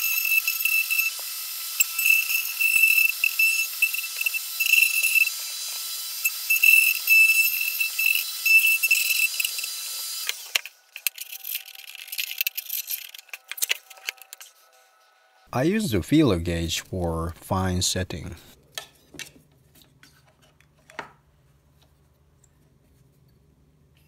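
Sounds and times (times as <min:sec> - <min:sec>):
router high whine: 0:00.0 - 0:10.6.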